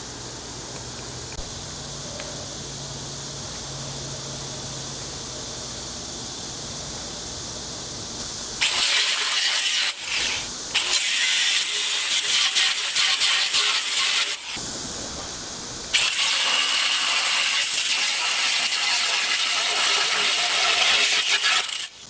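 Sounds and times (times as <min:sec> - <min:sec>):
grinder cutting steel: 0:08.6 - 0:14.6, 0:16.0 - 0:22.0.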